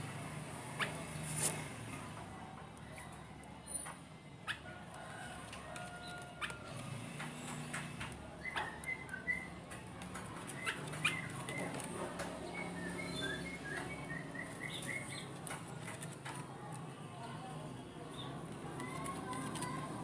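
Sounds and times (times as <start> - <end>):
bird whistled calls: 12.5 - 15.2.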